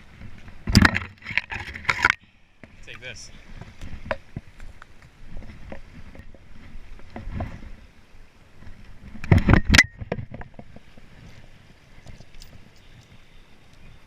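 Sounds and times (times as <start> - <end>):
kayak paddle in water: 0.0 - 14.0
knocks and splashes: 0.2 - 2.8.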